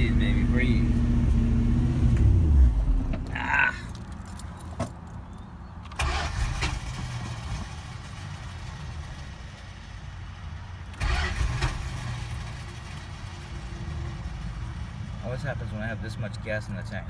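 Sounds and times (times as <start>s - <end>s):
engine revving: 0.0s - 3.6s, 10.9s - 15.2s.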